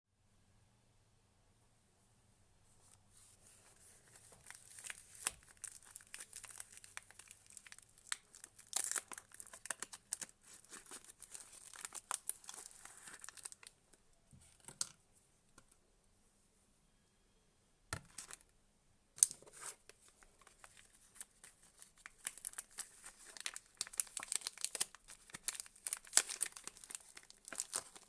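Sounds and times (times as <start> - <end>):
soap wrapping crinkling and tearing: 3.7 - 13.8, 18.1 - 18.5, 19.2 - 28.0.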